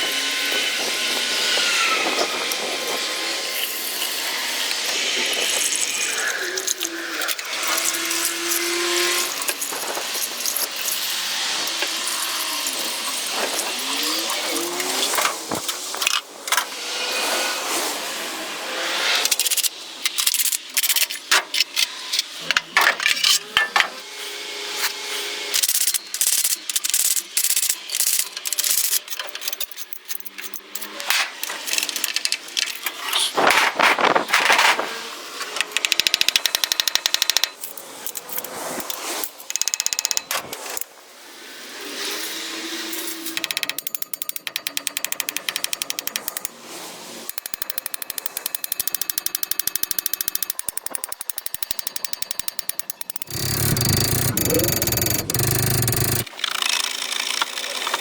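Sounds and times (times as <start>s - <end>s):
hand tools knocking and scraping metal: 47.3s - 56.2s
rapid even clicking: 47.3s - 56.3s.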